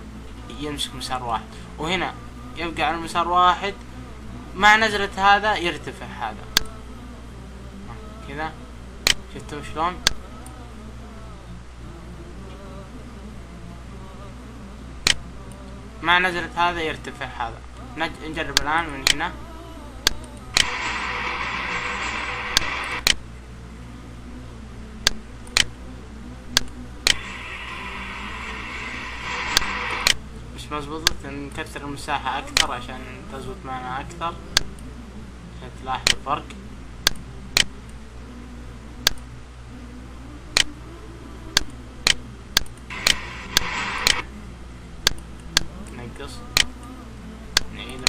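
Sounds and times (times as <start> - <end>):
steady low hum: 0.0 - 48.0
steady hiss: 20.5 - 23.1, 27.1 - 30.3, 42.9 - 44.3.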